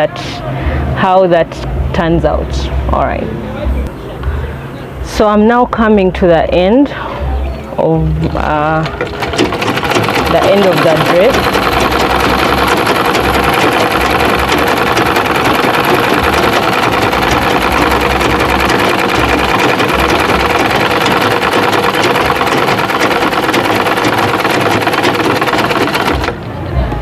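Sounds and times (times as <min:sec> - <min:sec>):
electric sewing machine running: 0:08.8 - 0:26.4.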